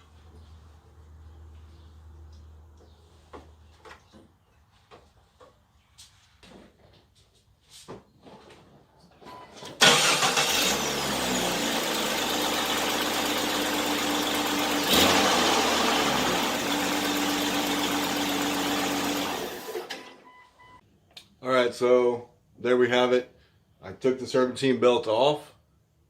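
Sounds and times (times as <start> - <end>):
car engine running: 9.8 - 19.7.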